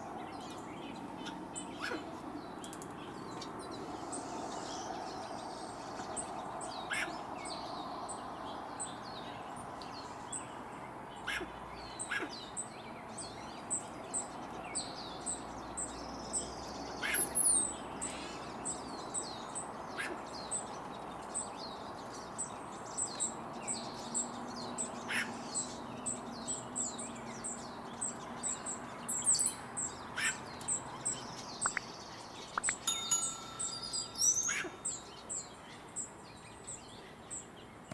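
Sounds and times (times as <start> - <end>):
high falling bird chirps: 29.3 - 35.7
hummingbird scratchy notes: 32.6 - 35.2
chime-like ringing: 32.7 - 35.2.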